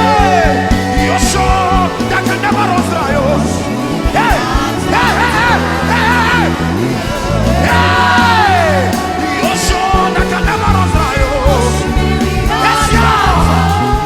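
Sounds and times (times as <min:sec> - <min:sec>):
gospel band playing: 0:00.0 - 0:14.0
person singing wordless ad-libs: 0:00.0 - 0:14.0.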